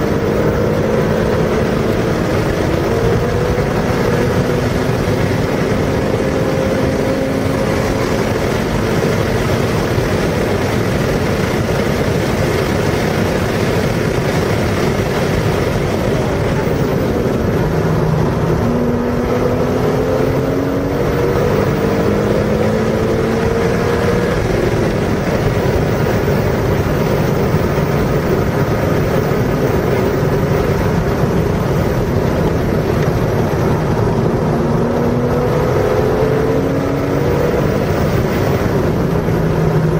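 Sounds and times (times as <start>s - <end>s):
car engine accelerating: 0.0s - 39.9s
wind and road noise: 0.0s - 39.9s.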